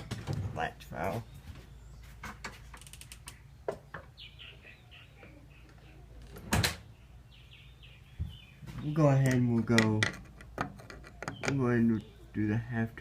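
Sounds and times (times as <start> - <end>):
door latching with a thump: 6.4 - 6.8.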